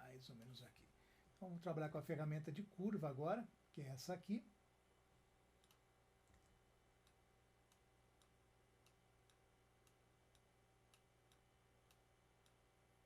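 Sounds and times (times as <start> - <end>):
computer mouse clicks: 5.6 - 12.6.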